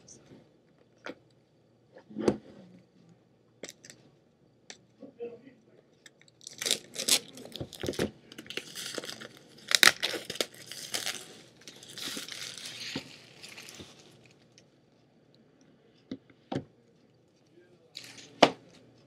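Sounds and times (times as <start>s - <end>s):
packaging torn and crinkled: 6.4s - 14.2s.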